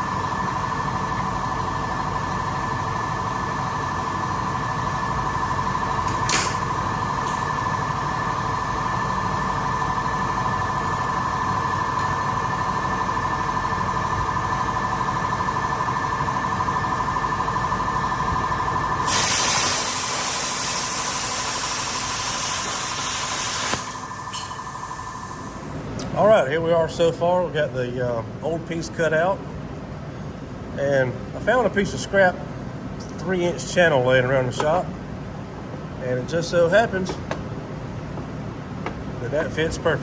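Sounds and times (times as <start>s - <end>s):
high machine whine: 0.0s - 29.6s
low hum: 6.6s - 26.0s
loud hiss: 19.0s - 25.9s.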